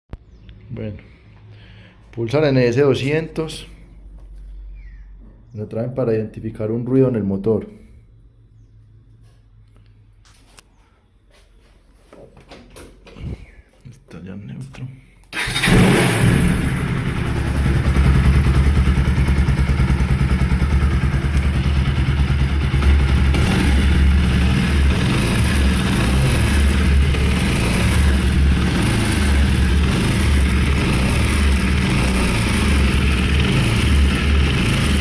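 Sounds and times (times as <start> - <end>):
motorcycle engine idling: 15.4 - 35.0.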